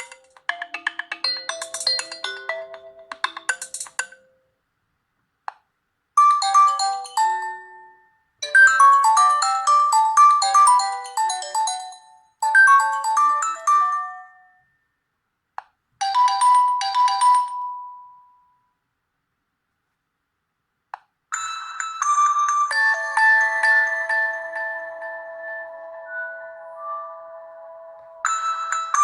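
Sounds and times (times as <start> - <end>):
electronic ringtone melodies: 0.0 - 4.4, 6.2 - 14.6, 21.4 - 29.0.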